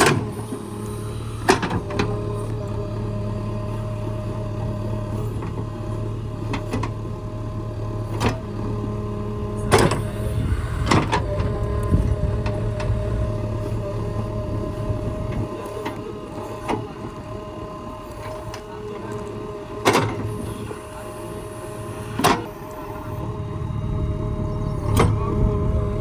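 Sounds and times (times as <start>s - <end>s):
constant engine whine: 0.0s - 26.0s
heavy machinery engine rumbling: 0.0s - 26.0s.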